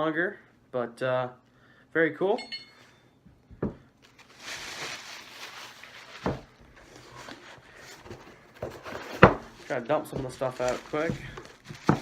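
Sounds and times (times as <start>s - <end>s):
packaging rustling: 4.0s - 12.0s.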